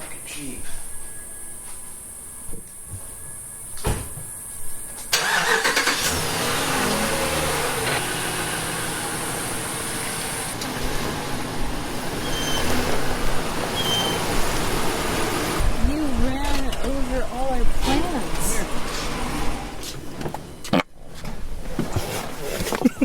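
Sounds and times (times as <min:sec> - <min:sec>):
car engine starting and idling: 0:05.1 - 0:20.7.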